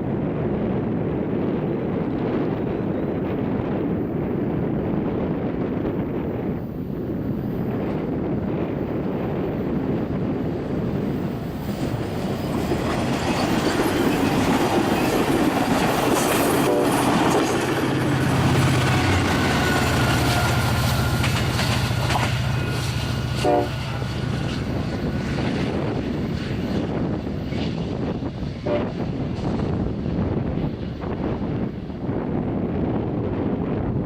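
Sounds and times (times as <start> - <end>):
diesel locomotive engine hum: 0.0 - 34.0
wind on microphone: 0.0 - 34.0
wheels on rails: 7.3 - 28.4.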